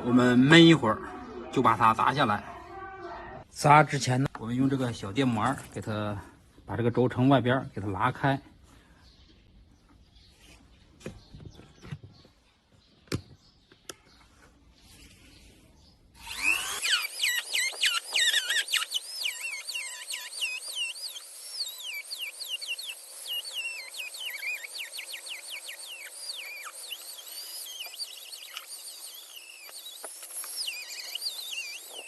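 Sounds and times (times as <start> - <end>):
rotary grinder cutting steel: 16.2 - 32.0.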